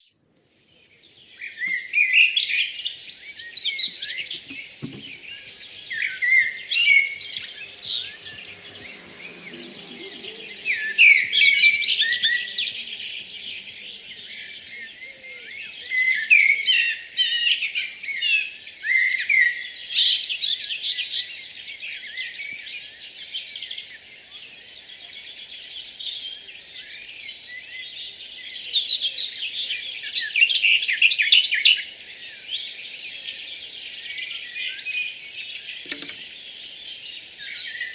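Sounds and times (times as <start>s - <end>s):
forest birds singing: 0.0s - 37.9s
thin high-pitched hum: 4.4s - 13.6s.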